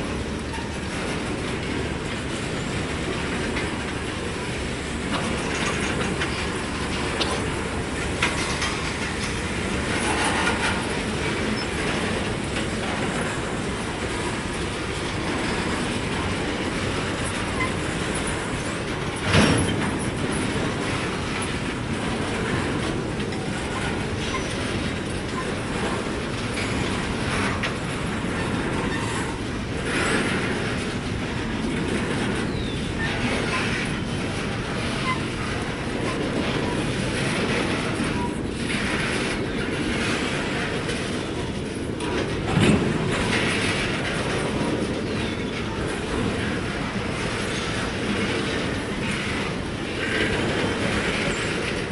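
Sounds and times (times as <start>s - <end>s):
train wheels rumbling on rails: 0.0s - 51.9s
wheel squeals: 17.2s - 20.8s, 23.3s - 30.9s, 32.0s - 40.2s.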